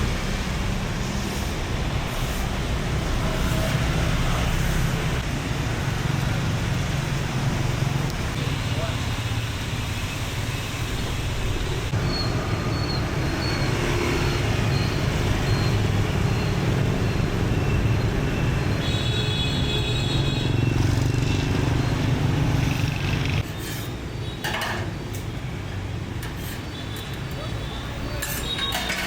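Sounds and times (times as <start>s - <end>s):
traffic rumble: 0.0s - 29.0s
vehicle engines running: 20.3s - 23.5s.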